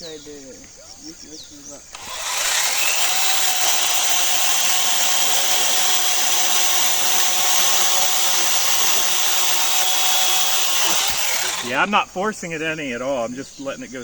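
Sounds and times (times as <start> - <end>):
electric chainsaw cutting log: 1.9 - 11.8.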